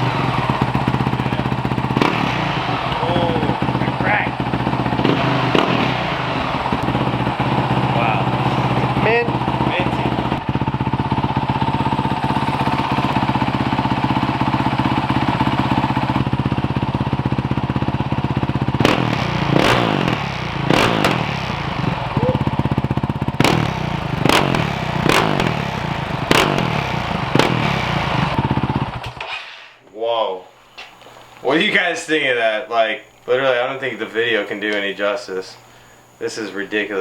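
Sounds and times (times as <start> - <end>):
motorcycle engine idling and revving: 0.0 - 29.3.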